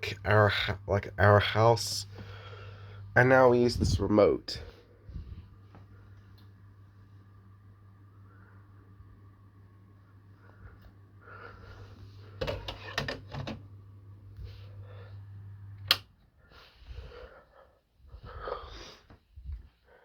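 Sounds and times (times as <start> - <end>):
ceiling fan motor hum: 0.0 - 20.0
fan switch clicks: 15.8 - 16.1.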